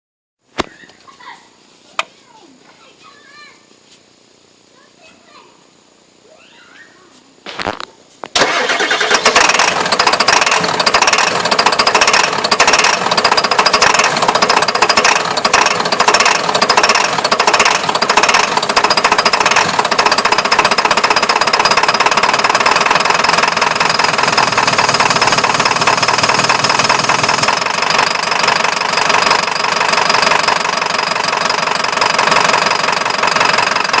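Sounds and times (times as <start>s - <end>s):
engine cranking: 8.4s - 34.0s.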